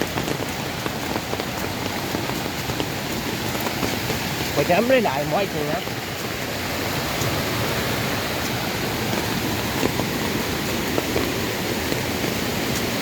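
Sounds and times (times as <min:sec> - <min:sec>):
forest stream rushing: 0:00.0 - 0:13.0.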